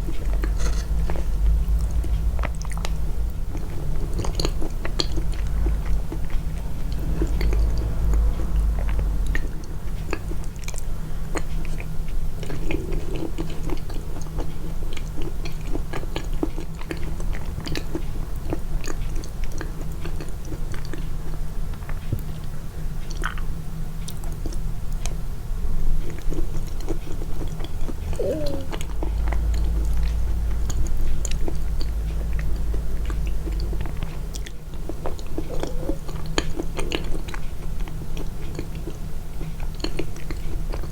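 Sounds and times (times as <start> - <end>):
heavy low rumble: 0.0 - 11.2, 27.6 - 37.4
close chewing with mouth clicks: 0.0 - 40.9.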